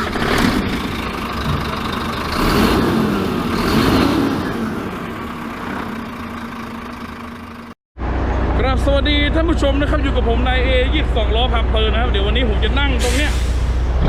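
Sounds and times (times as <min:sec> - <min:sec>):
truck diesel engine revving: 0:00.0 - 0:07.8.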